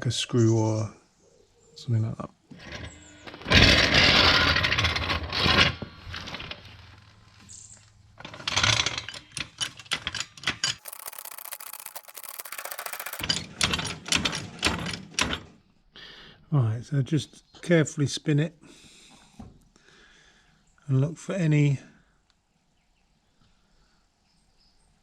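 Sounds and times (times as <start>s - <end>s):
metal tools scraping and clattering: 8.2s - 15.4s
sharp clicks: 10.8s - 13.2s.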